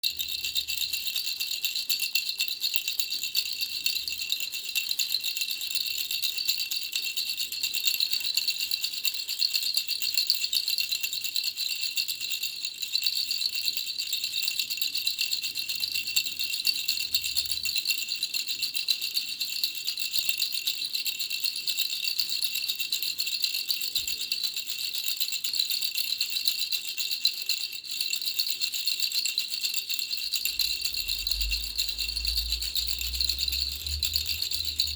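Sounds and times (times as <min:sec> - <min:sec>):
baby rattle shaken: 0:12.1 - 0:34.9.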